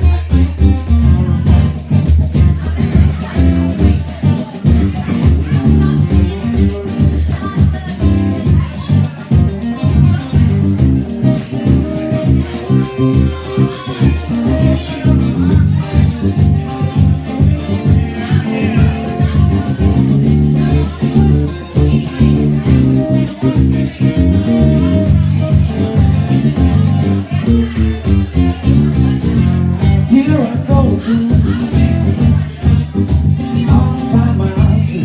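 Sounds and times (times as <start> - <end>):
bass guitar: 0.0 - 35.0
drum beat: 0.0 - 35.0
electric guitar: 0.0 - 35.0.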